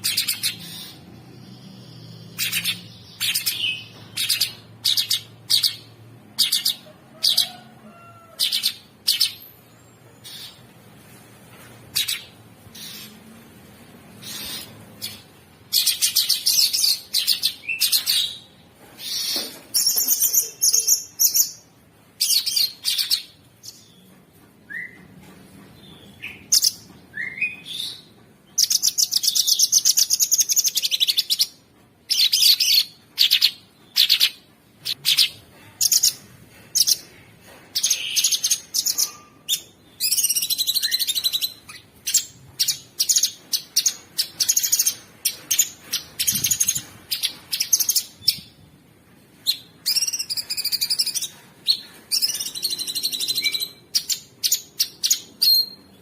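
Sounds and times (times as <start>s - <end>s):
bird chirps: 0.0s - 7.6s, 37.8s - 48.5s.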